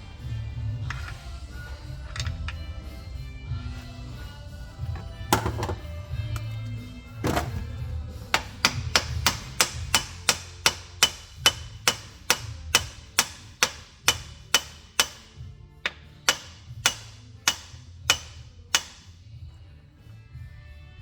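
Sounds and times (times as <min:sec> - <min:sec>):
hammer tapping metal: 0:08.3 - 0:19.1.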